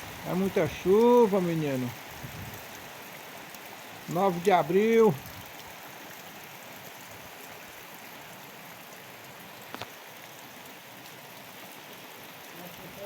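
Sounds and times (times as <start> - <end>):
heavy rain: 0.0 - 13.0.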